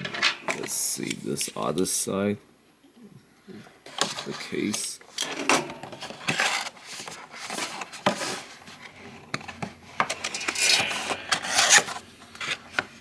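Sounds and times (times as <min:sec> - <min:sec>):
packaging rustling: 0:03.9 - 0:13.0.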